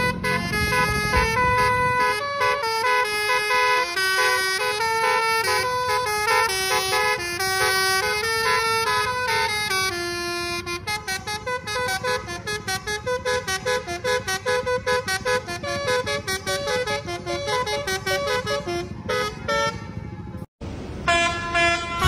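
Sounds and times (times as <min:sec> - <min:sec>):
bus engine rumble: 0:00.0 - 0:22.0
multi-tone musical bus horn: 0:00.0 - 0:22.0.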